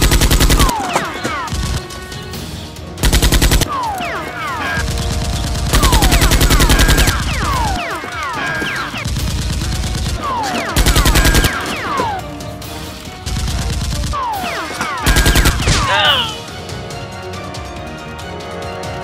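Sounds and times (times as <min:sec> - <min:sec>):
machine-gun fire: 0:00.0 - 0:01.9, 0:03.0 - 0:12.2, 0:13.2 - 0:15.9
background music: 0:00.0 - 0:19.0.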